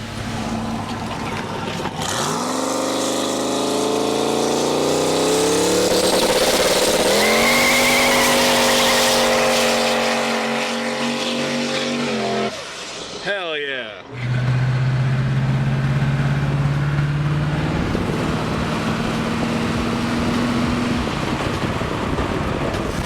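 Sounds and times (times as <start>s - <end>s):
car engine accelerating: 0.0s - 13.4s, 14.0s - 23.0s
road and wind noise: 0.0s - 23.0s.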